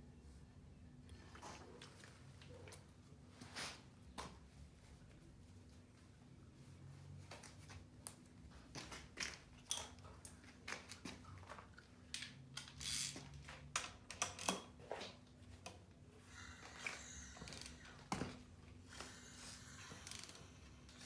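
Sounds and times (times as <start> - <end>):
faint steady hum: 15.1 - 21.0.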